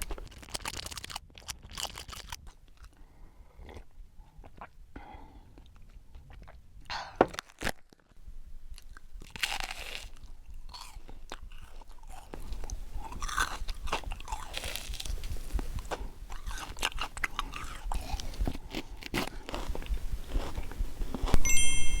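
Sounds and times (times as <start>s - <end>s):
crunchy mouth clicks: 0.0s - 4.8s
wet chewing and smacking: 0.0s - 21.5s.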